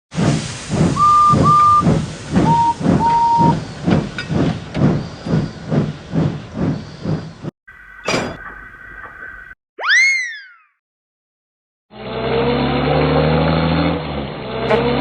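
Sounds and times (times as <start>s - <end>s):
steam locomotive chuffing: 0.1s - 9.4s
train whistle toots: 1.0s - 3.6s.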